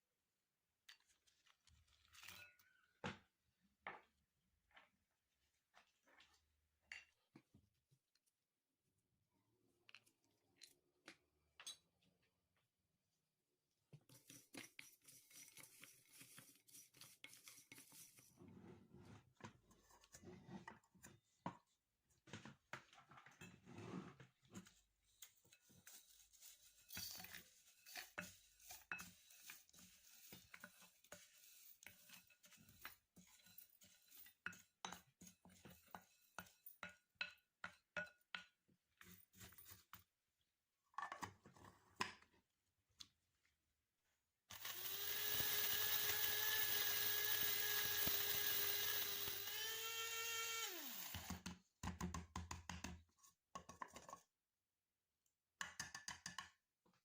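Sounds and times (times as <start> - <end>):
small electric motor running: 44.5 - 51.3.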